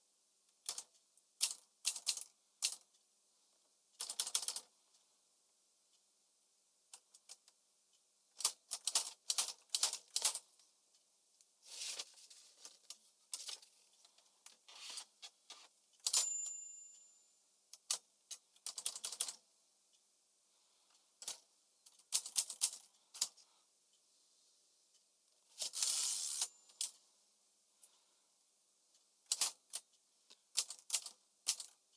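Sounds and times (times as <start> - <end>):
typewriter carriage bell: 16.0 - 17.3, 25.7 - 26.9.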